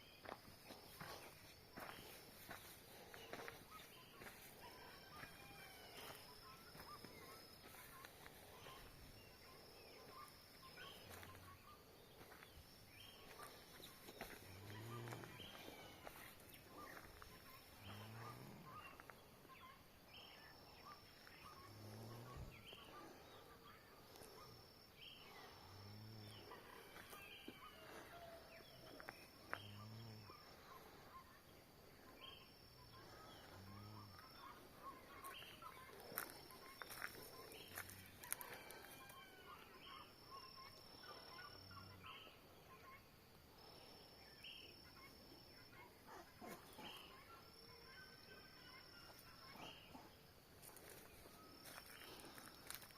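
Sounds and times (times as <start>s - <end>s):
birds chirping and trilling: 33.0s - 39.4s.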